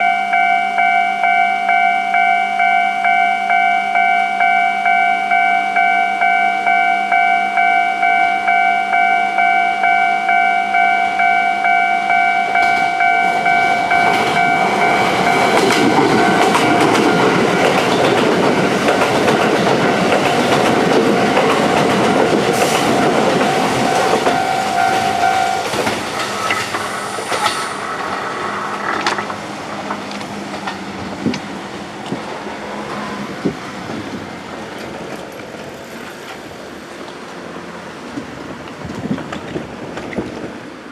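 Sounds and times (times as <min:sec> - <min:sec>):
level-crossing warning bell: 0:00.0 - 0:37.4
train wheels clacking over rail joints: 0:12.6 - 0:40.9.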